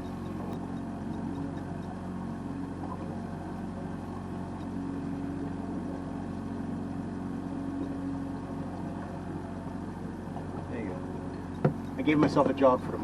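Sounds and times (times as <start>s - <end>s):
boat motor running: 0.0s - 13.0s.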